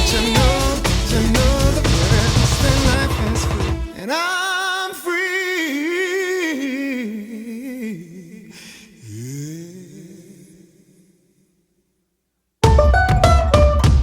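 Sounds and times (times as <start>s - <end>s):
person singing solo: 0.0s - 8.4s.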